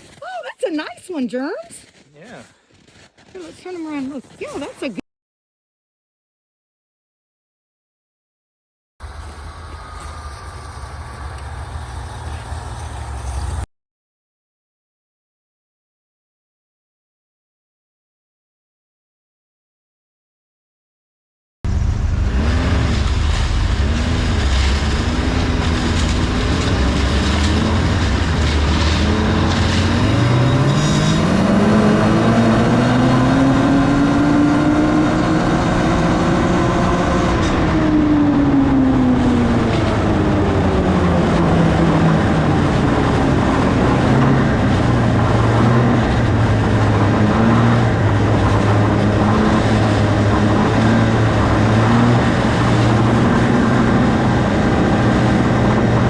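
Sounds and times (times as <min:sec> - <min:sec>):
vehicle engine running hard: 0:09.0 - 0:13.7, 0:21.7 - 0:56.0
steady rushing noise: 0:21.7 - 0:30.0.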